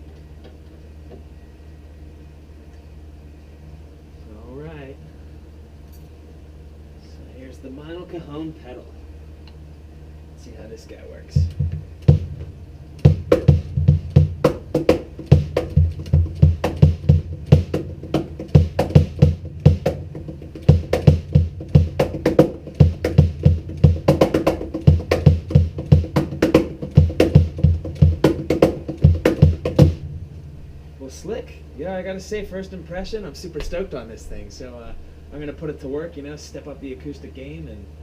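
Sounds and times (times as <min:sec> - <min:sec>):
cajon groove: 0:11.3 - 0:30.3.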